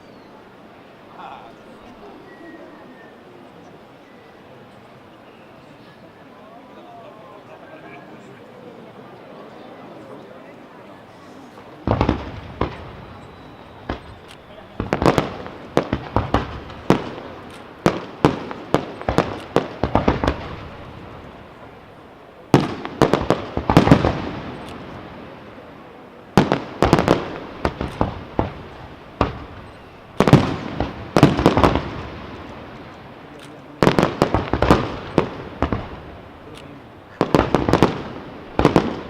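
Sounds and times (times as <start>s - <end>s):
fireworks bursting: 11.2s - 39.0s.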